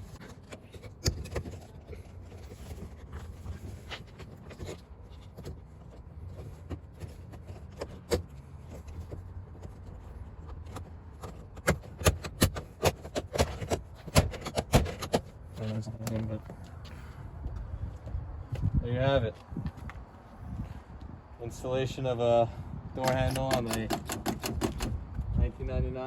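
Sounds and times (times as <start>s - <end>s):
plastic trim clicking and rubbing: 23.0s - 25.0s.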